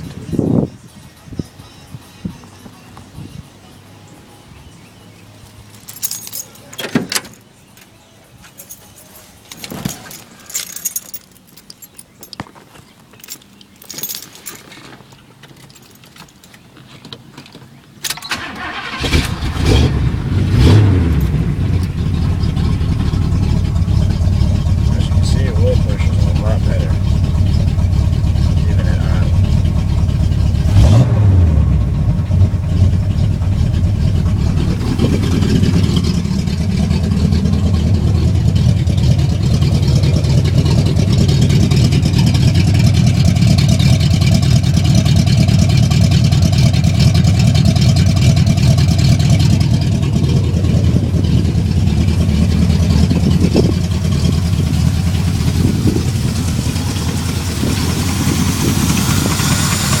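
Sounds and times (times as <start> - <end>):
car engine idling: 17.7 - 60.0.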